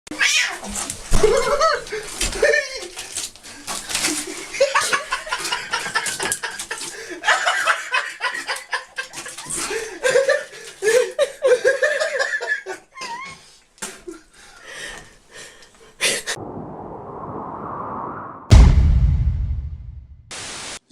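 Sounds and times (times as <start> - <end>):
people laughing: 1.2 - 3.0, 4.2 - 13.2.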